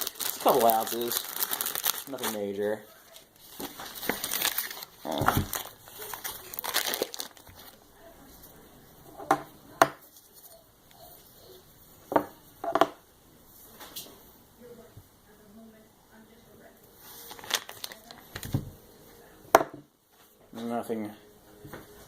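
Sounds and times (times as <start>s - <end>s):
packaging crinkling and tearing: 0.0s - 7.8s, 17.2s - 18.6s.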